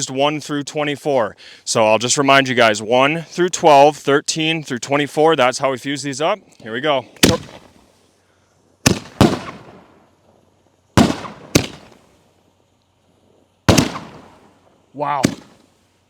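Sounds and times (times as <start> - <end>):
firework shells banging: 8.9 - 10.0, 11.0 - 12.0, 13.7 - 14.5, 15.2 - 15.7.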